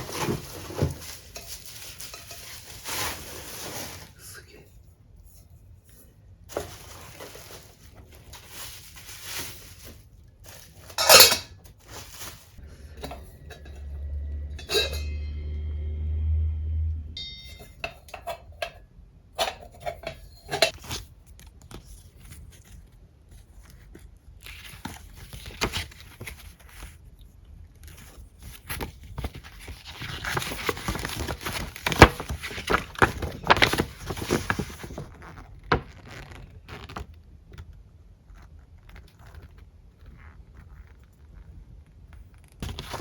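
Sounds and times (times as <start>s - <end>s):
rustling: 0.0s - 4.3s, 5.2s - 13.4s, 20.6s - 43.0s.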